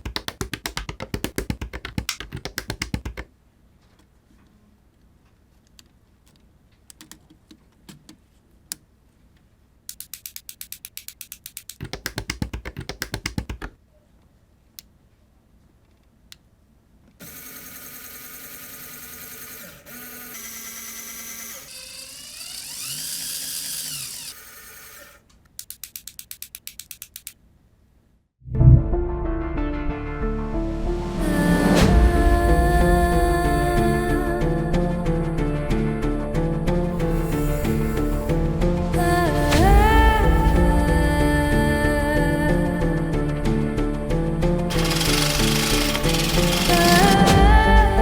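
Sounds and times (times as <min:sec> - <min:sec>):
mechanism clicking: 0:09.9 - 0:13.6, 0:21.5 - 0:27.4
small motor whirring: 0:17.2 - 0:25.2, 0:44.7 - 0:47.3
rapid ratchet-like ticking: 0:17.3 - 0:27.3, 0:44.7 - 0:47.3.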